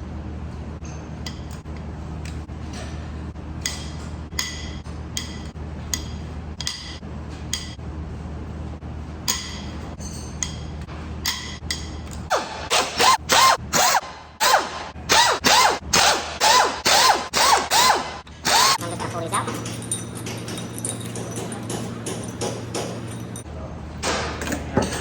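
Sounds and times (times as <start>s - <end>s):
steady low hum: 0.0s - 25.0s
power tool running in bursts: 12.3s - 19.0s
hand tools clinking on metal: 18.5s - 23.5s.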